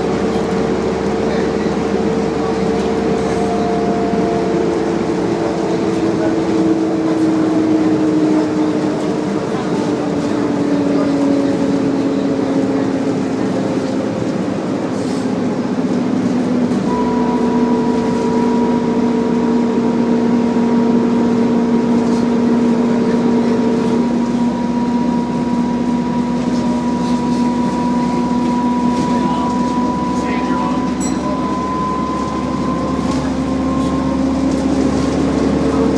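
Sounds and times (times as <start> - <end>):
bus whining drone: 0.0 - 35.9.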